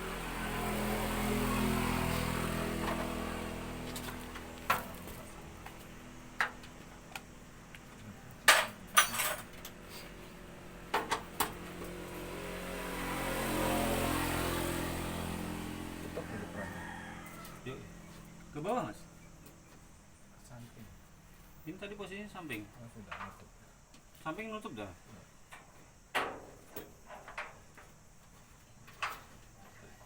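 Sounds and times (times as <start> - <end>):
vehicle engine humming: 0.0 - 21.7
metallic clinks of tools: 8.5 - 9.5.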